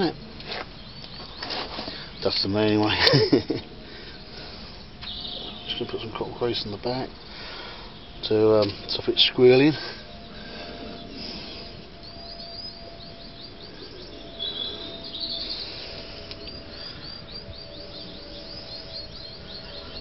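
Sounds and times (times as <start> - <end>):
faint steady hum: 0.0 - 20.0
songbird chirping: 0.0 - 20.0.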